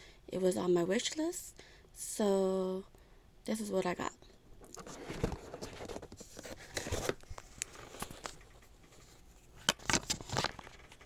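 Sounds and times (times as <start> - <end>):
packaging rustling and scraping: 4.6 - 11.0.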